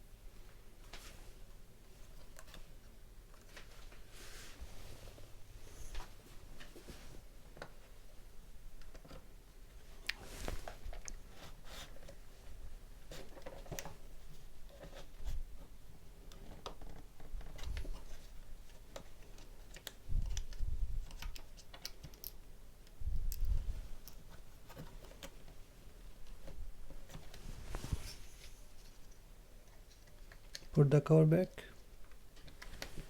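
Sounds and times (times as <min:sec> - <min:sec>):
laptop parts clicking: 0:18.9 - 0:25.4.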